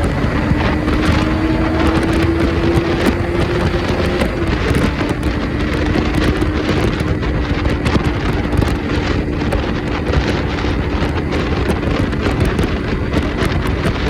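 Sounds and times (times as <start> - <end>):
vehicle engine hum: 0.0 - 14.0
wind rushing over microphone: 0.0 - 14.0.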